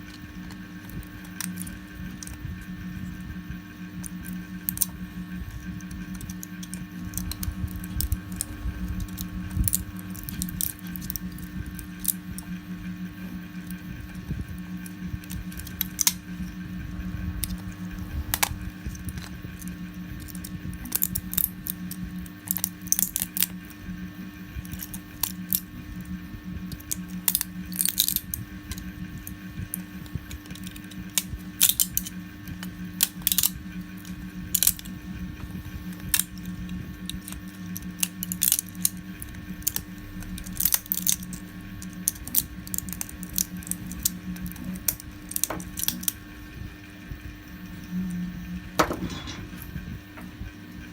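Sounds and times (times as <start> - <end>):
steady low hum: 0.0 - 50.9
plastic snapping with pliers: 33.0 - 34.9, 36.0 - 46.2.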